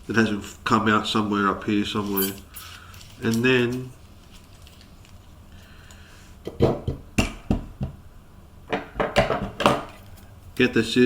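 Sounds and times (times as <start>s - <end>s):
hard objects clattering on tabletop: 6.4s - 8.0s, 8.7s - 10.7s.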